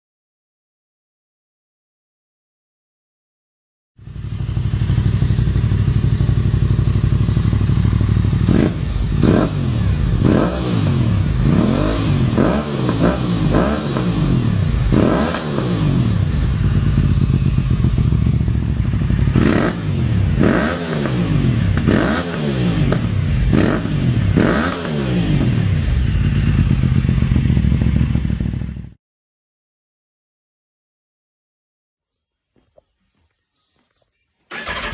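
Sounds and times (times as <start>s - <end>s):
motorcycle engine idling and revving: 4.0s - 29.0s, 34.5s - 34.9s.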